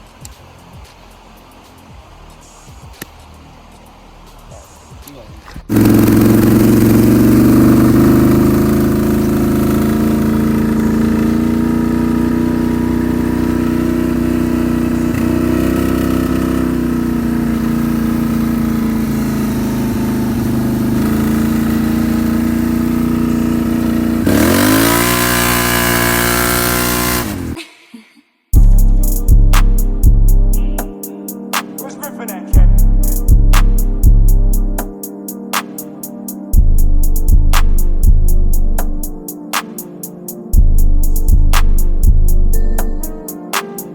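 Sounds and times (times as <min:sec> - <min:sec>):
vehicle engine revving: 0:05.7 - 0:27.6, 0:28.6 - 0:30.9, 0:32.6 - 0:35.0.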